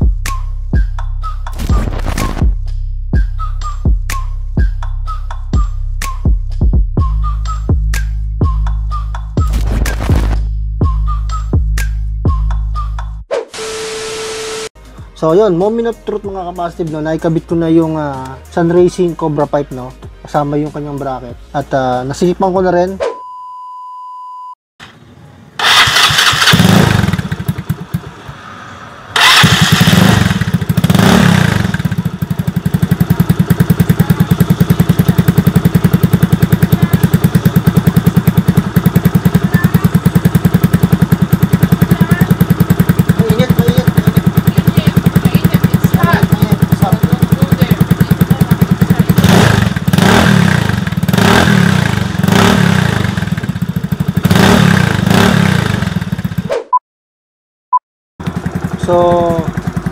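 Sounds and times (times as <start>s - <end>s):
short beep: 13.6s - 14.7s, 23.0s - 24.6s
scooter engine revving and idling: 25.6s - 56.5s, 58.2s - 59.9s.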